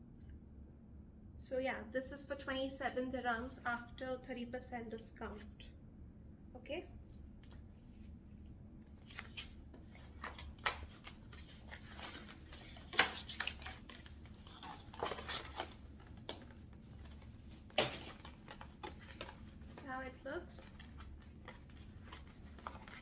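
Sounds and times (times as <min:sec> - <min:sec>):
rustling of cloth and packaging: 0:07.0 - 0:23.0.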